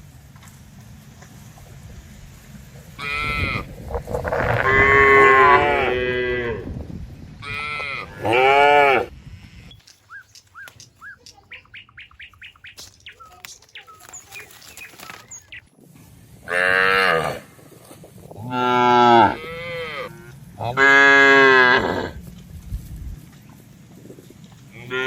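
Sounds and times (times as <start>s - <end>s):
cow mooing: 3.0s - 6.7s, 7.4s - 9.1s, 16.5s - 17.5s, 18.4s - 22.2s, 24.7s - 25.0s.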